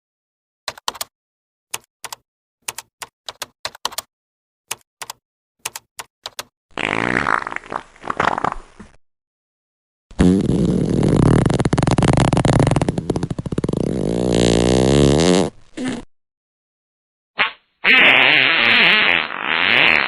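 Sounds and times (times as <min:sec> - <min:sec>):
fart sounds: 0:06.8 - 0:09.0, 0:10.1 - 0:16.1, 0:17.4 - 0:20.0.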